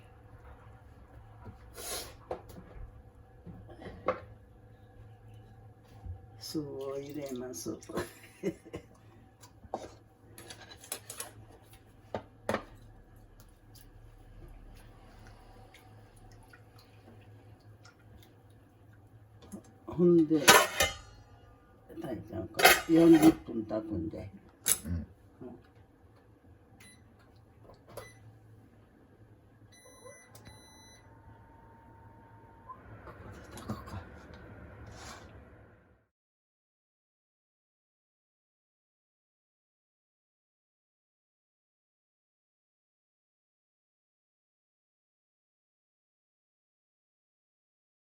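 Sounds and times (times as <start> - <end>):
low steady hum: 0.0 - 36.0
utensils clinking on cooking pot: 20.4 - 21.2, 22.5 - 23.5.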